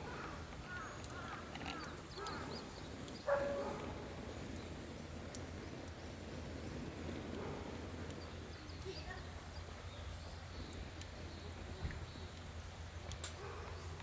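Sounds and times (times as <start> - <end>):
birds chirping: 0.0 - 4.9, 7.5 - 12.5.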